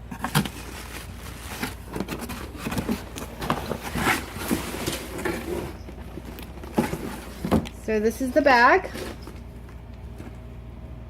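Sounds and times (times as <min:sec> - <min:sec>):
packaging rustling and crinkling: 0:00.0 - 0:07.8.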